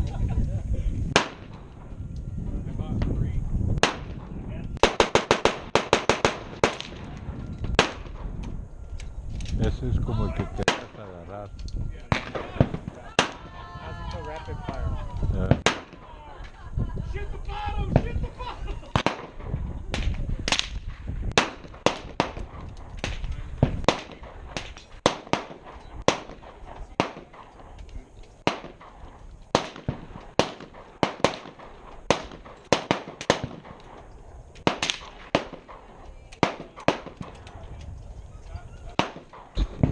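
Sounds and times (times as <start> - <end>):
gunshots: 1.1 - 1.9, 3.8 - 8.4, 10.6 - 11.2, 12.1 - 13.6, 15.4 - 16.1, 18.9 - 27.8, 28.4 - 37.6, 38.9 - 39.9.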